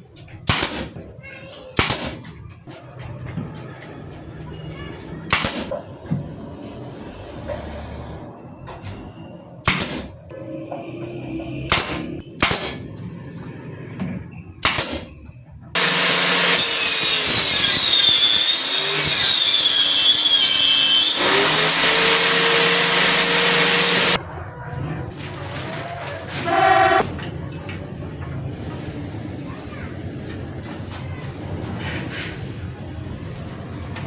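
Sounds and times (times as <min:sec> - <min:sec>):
woodworking power tool whining: 0:15.8 - 0:24.2, 0:25.7 - 0:27.1.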